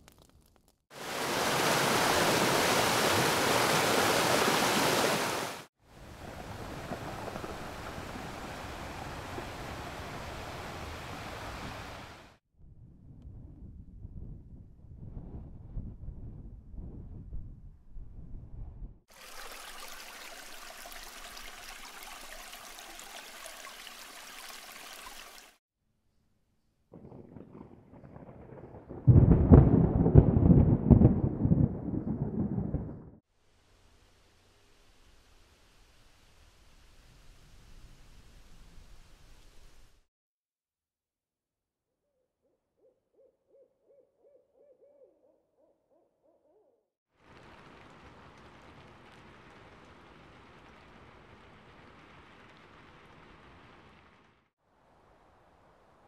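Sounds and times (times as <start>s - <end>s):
rushing running water: 1.0s - 5.7s, 19.1s - 25.6s.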